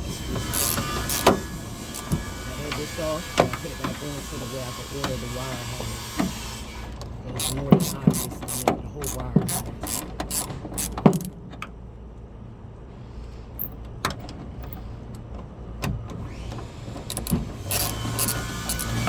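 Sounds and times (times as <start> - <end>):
ratchet clicking: 0.4 - 2.2, 7.0 - 11.4, 17.1 - 19.0
tools and parts knocking: 0.5 - 1.4, 7.4 - 11.4.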